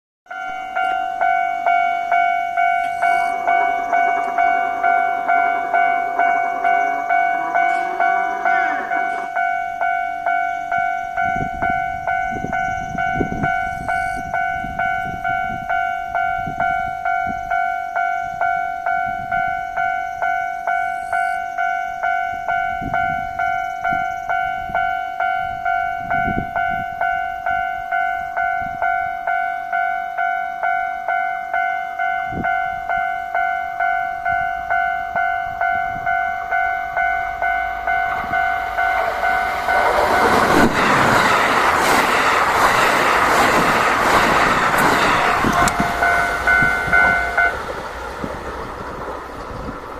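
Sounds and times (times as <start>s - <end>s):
level-crossing bell ringing: 0.3s - 47.7s
electric train passing: 0.3s - 49.9s
train wheel clatter: 2.6s - 10.0s, 37.4s - 49.9s.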